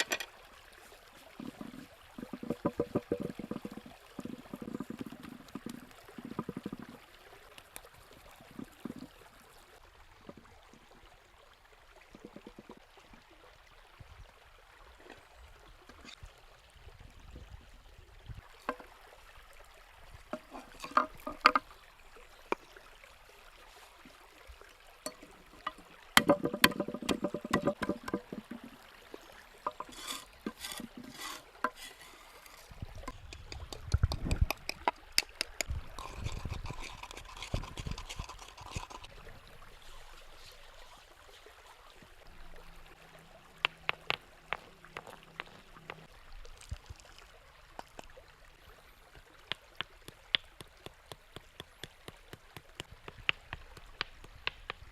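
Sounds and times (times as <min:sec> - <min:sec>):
liquid being poured: 0:01.1 - 0:09.6, 0:24.9 - 0:39.9
utensils clicking and knocking: 0:25.1 - 0:28.7, 0:29.7 - 0:39.1.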